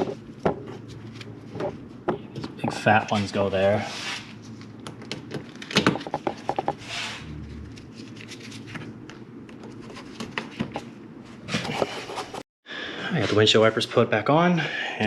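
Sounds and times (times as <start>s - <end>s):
rustling scrape: 11.3s - 12.4s.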